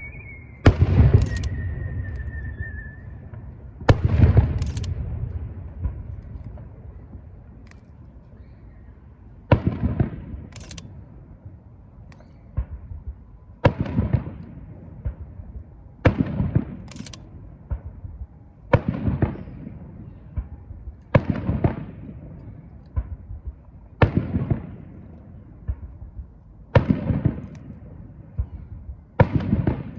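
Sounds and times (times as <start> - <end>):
firework shells booming: 0.6 - 7.2.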